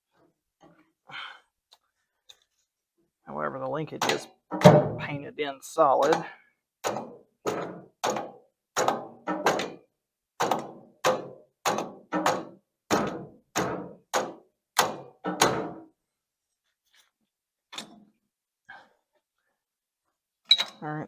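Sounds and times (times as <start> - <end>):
sharp knocks on metal linkage: 6.8 - 9.8, 10.4 - 15.8.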